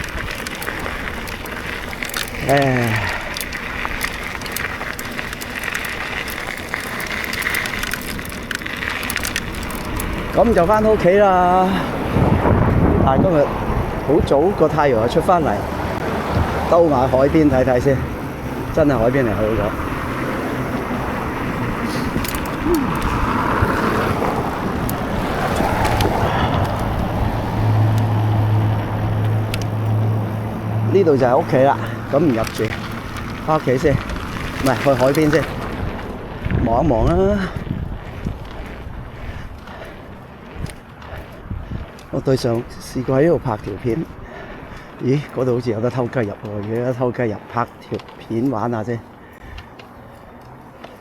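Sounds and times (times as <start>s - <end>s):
sharp ticks: 0.0s - 11.1s, 21.5s - 35.8s
small clicks and rattles: 0.0s - 11.2s, 20.4s - 51.0s
bike tyres crunching on gravel: 0.0s - 51.0s
wind over microphone: 0.0s - 51.0s.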